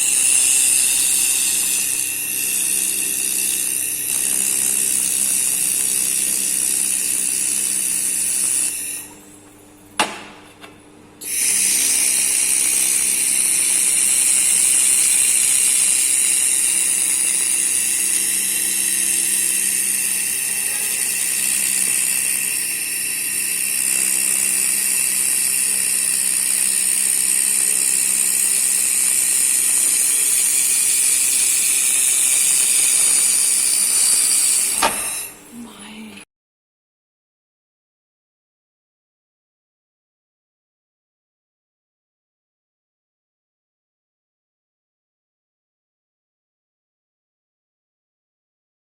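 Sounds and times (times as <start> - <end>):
laser welder hissing: 0.0 - 9.1, 11.2 - 35.4.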